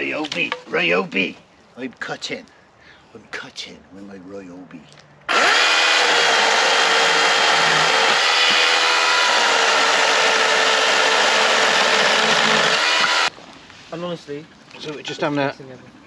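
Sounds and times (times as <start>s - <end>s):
power tool motor cutting: 5.3s - 13.3s.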